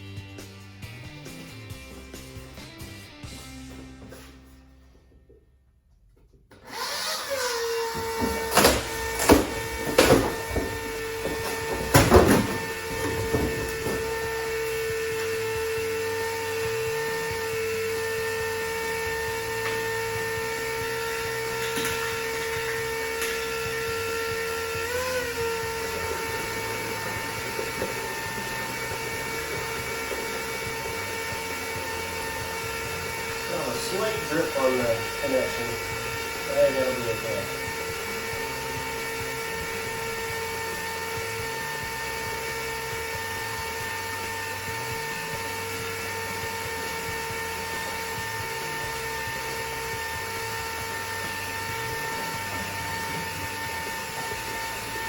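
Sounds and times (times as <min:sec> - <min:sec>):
electric pump motor humming: 0:06.5 - 0:55.0
knocks and clatters: 0:07.9 - 0:14.3.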